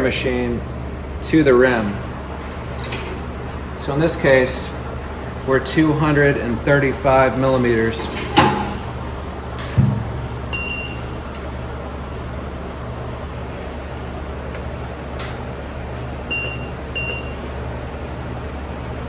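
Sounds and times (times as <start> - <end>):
low hum: 4.7 - 15.0.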